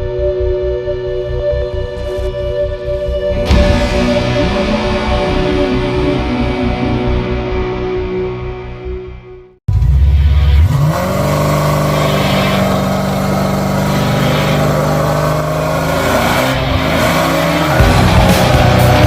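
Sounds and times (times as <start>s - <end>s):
race car engine revving: 9.7s - 19.0s.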